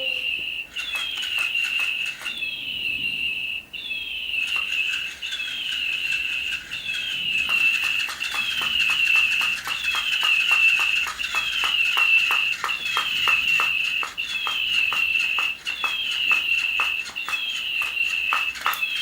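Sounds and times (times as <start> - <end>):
toy bird electronic chirping: 0.0 - 19.0
wing-flapping mechanism clicking: 0.7 - 2.4, 4.4 - 19.0.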